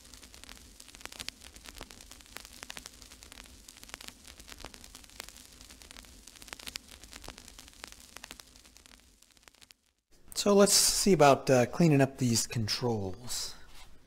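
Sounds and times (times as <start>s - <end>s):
crackling clicks: 0.0s - 10.5s.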